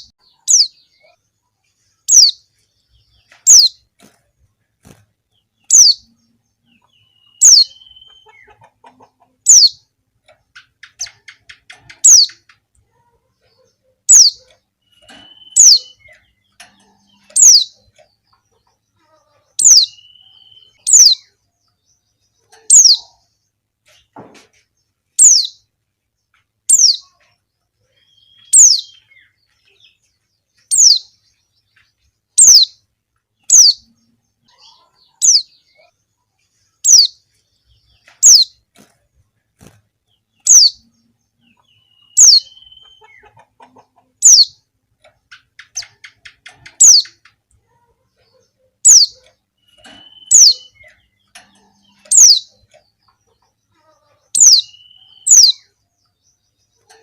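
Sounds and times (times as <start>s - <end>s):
bird chirp sliding downward: 6.7s - 9.8s, 14.1s - 16.2s, 16.9s - 17.8s, 19.6s - 21.3s, 25.2s - 25.6s, 28.0s - 29.8s, 40.4s - 44.6s, 48.8s - 53.2s, 54.4s - 55.7s.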